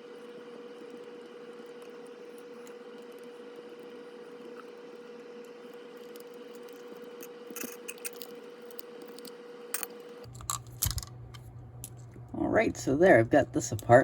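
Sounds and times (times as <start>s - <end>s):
small screws and plastic parts clicking: 5.4s - 11.1s.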